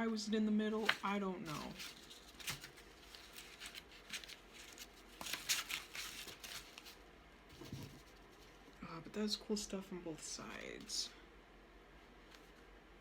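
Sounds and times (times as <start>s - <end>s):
paper rustling and crinkling: 0.7s - 8.8s.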